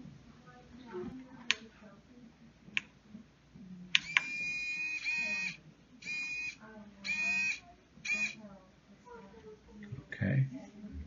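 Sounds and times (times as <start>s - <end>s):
servo motor whirring: 4.0s - 8.4s.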